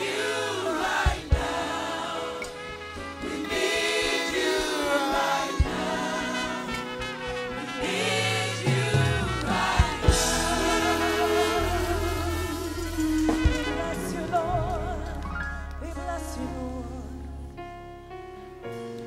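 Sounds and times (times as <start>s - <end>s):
voices singing gospel: 0.0s - 17.4s
keyboard and band: 0.0s - 19.0s
bass and drum hits: 8.7s - 14.8s.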